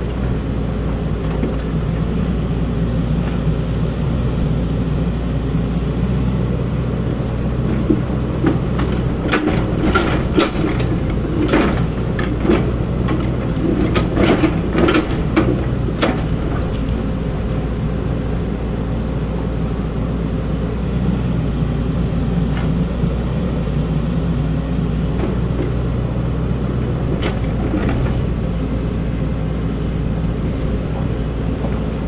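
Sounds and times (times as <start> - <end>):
excavator diesel engine running: 0.0 - 32.0
metallic clanks and knocks: 7.8 - 16.9.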